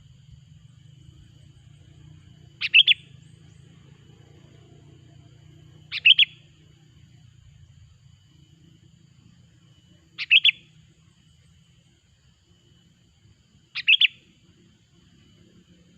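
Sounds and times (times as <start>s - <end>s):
bulbul calls: 2.5s - 3.7s, 5.6s - 6.6s, 10.2s - 10.8s, 13.7s - 14.3s.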